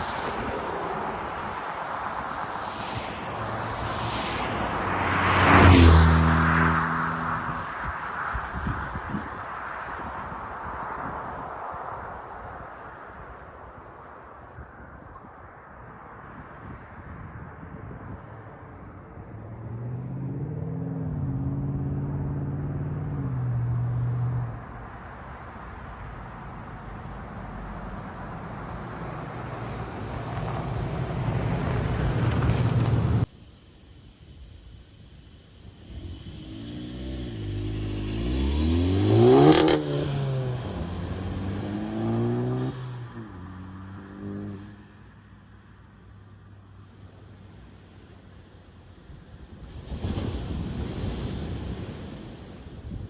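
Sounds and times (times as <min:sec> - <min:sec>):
car exhaust accelerating: 0:26.1 - 0:33.3, 0:35.8 - 0:44.9
car engine exhaust revving: 0:35.8 - 0:43.0.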